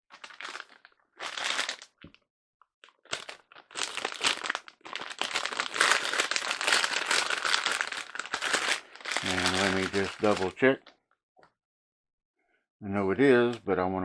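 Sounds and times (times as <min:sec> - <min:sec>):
crinkling and rustling: 0:00.1 - 0:02.2, 0:02.8 - 0:10.9.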